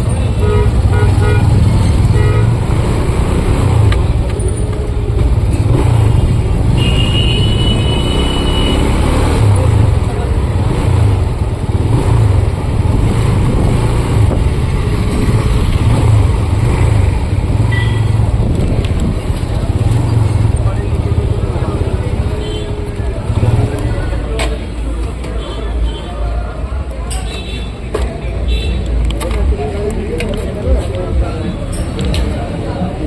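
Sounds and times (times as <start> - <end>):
vehicle horn: 0.3 - 2.6, 6.7 - 8.9
wind and road rumble: 8.8 - 25.4.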